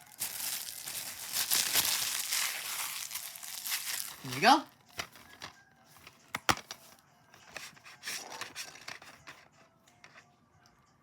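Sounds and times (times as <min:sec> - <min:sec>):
shrink wrap rustling: 0:00.0 - 0:05.5.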